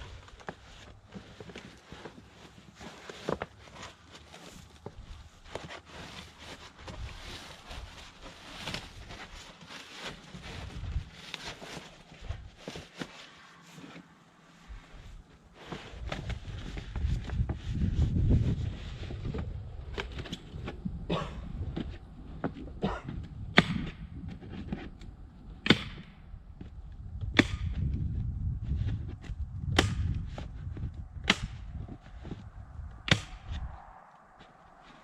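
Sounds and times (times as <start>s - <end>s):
low wind rumble: 10.3s - 12.7s, 14.6s - 35.0s.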